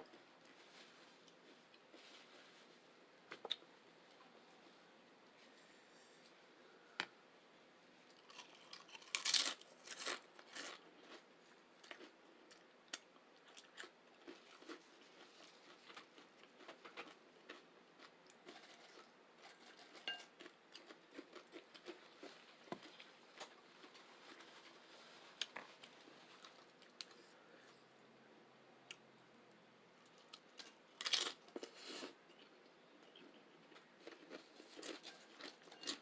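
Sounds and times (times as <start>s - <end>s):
chips being chewed: 8.1s - 11.2s, 11.8s - 24.0s, 33.7s - 36.0s.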